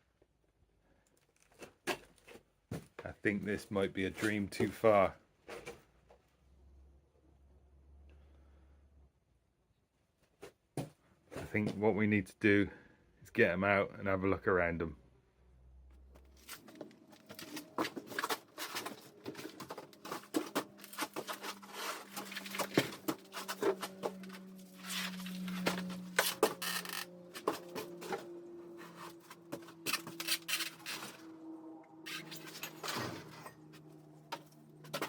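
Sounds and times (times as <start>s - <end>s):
bicycles knocking and rattling: 16.5s - 31.3s.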